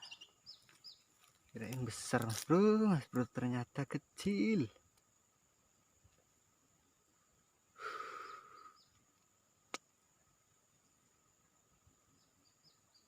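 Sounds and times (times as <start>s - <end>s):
faint high bird chirps: 0.0s - 1.7s, 6.8s - 9.3s, 10.1s - 13.0s.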